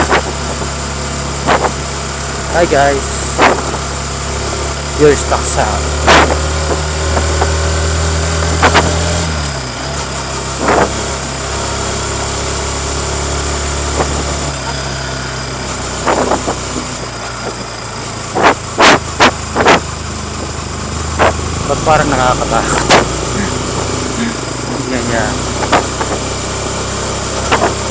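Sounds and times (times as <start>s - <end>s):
motorcycle engine idling: 0.0s - 27.9s
sharp knocks: 3.4s - 3.8s, 6.0s - 7.6s, 25.6s - 26.2s.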